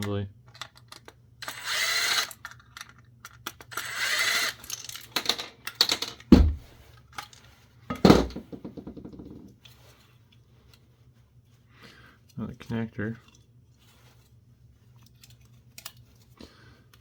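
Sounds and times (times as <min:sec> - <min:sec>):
power screwdriver whirring: 0:01.4 - 0:02.5, 0:03.7 - 0:04.8
loud thumps: 0:06.3 - 0:06.8, 0:07.9 - 0:09.5.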